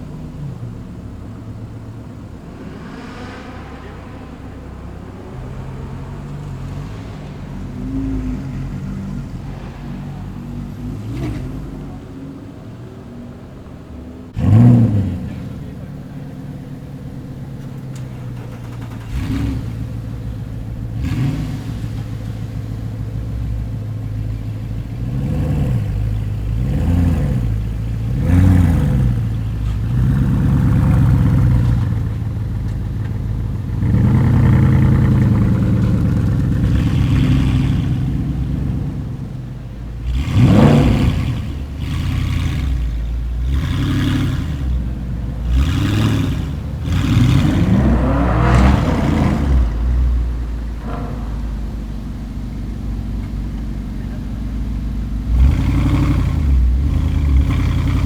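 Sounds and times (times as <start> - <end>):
car engines revving: 0.0 - 58.0
exhaust pops and crackles: 14.3 - 58.0.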